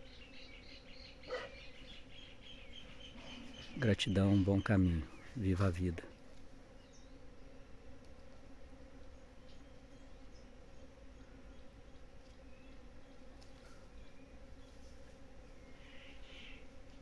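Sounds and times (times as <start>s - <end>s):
faint bird chirps: 0.0s - 5.4s
bees buzzing: 0.0s - 17.0s.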